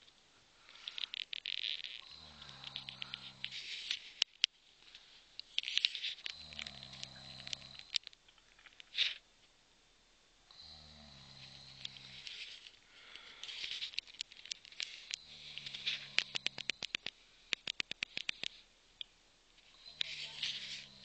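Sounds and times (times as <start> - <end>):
man snoring: 2.0 - 3.6, 6.3 - 8.0, 10.5 - 12.4, 19.7 - 21.0
fast sharp clicks: 13.4 - 18.6.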